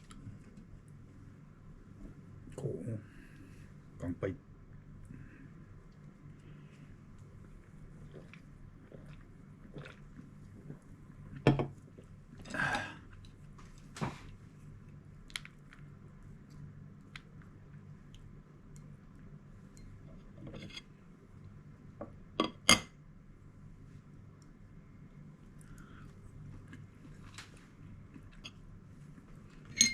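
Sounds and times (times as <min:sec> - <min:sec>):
quiet chewing: 0:00.0 - 0:00.8, 0:05.1 - 0:20.4, 0:24.0 - 0:29.6.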